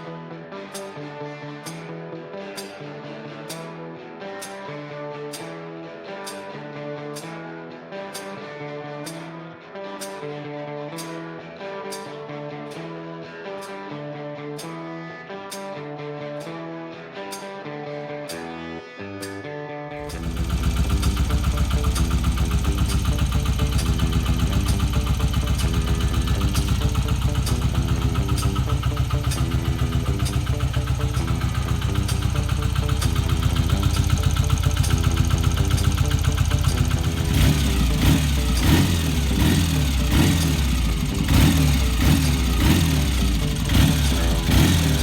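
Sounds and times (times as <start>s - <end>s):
motorcycle engine idling: 20.0s - 45.0s
throttle blips revving engine: 20.0s - 45.0s.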